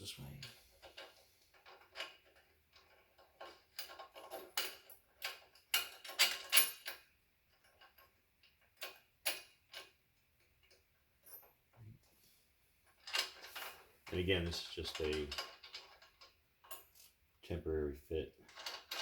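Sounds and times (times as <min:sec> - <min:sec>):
small metal hardware clinking: 0:00.9 - 0:08.1.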